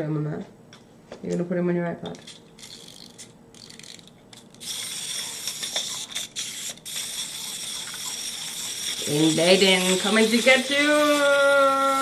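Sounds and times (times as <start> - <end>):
wind-up toy motor whirring: 2.2 - 12.0.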